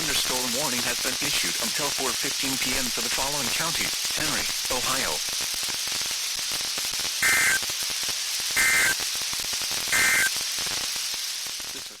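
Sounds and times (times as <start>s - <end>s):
radio static: 0.0s - 5.3s, 7.2s - 7.7s, 8.6s - 9.0s, 9.9s - 10.4s, 11.7s - 12.0s
warbling digital data tones: 7.2s - 7.6s, 8.6s - 9.0s, 9.9s - 10.4s.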